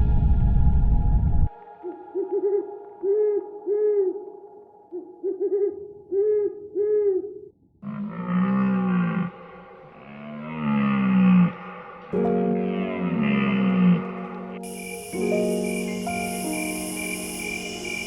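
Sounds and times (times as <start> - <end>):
owl hooting: 4.9 - 11.8, 12.6 - 18.0
steady background drone: 8.6 - 18.0.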